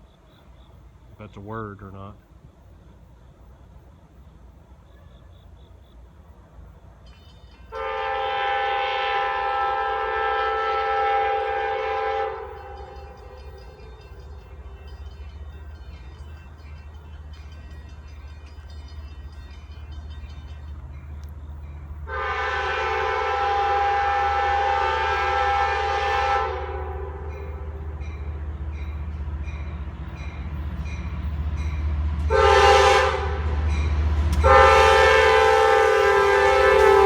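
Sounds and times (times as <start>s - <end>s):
low rumble of diesel locomotives: 0.0s - 37.0s
train horn blasts: 7.7s - 15.0s, 22.0s - 31.1s, 32.2s - 37.0s.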